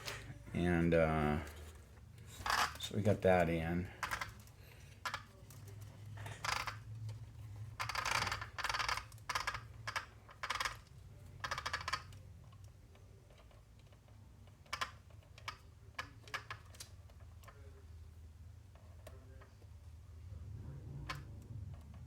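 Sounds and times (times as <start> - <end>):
faint low hum: 0.0 - 22.0
small parts clicking and rattling: 1.3 - 17.7.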